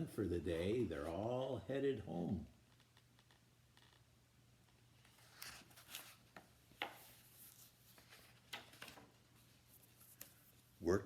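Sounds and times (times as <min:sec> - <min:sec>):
paper pages rustling: 0:05.0 - 0:10.7.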